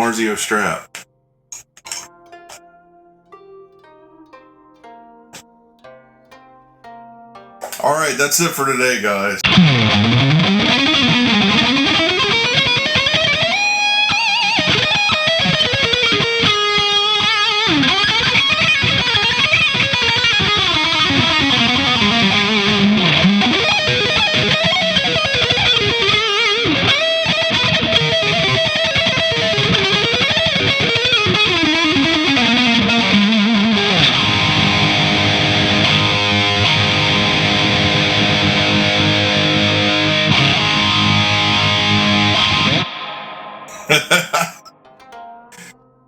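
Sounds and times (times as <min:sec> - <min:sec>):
distorted electric guitar lead: 0:09.4 - 0:44.2.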